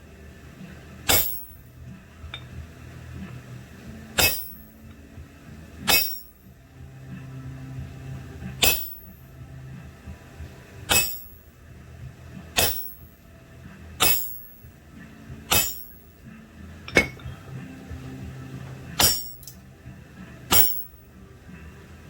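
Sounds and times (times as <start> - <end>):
faint low hum: 0.0 - 22.0
hammer striking steel on anvil: 1.0 - 2.6, 4.2 - 5.0, 5.8 - 6.5, 8.6 - 9.2, 10.9 - 11.4, 12.6 - 13.2, 14.0 - 14.7, 15.5 - 16.2, 16.9 - 17.4, 19.0 - 19.6, 20.5 - 21.0.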